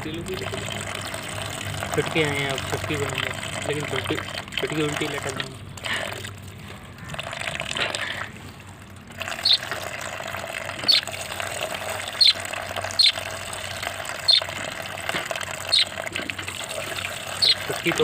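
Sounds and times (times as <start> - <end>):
trickling water: 0.0 - 18.0
small bird chirping: 9.3 - 9.8, 10.8 - 11.1, 12.0 - 14.6, 15.6 - 16.0, 16.9 - 18.0.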